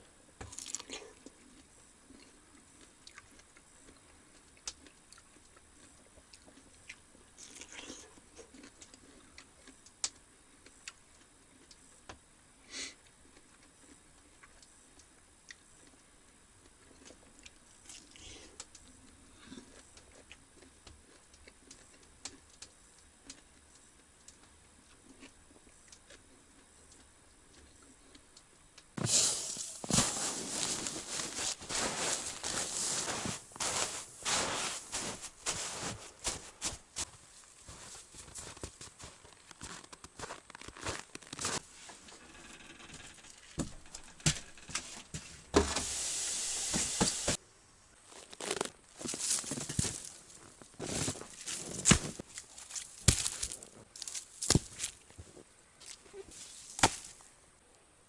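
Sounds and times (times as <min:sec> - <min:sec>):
rustling: 0:29.0 - 0:38.6, 0:48.1 - 0:57.2.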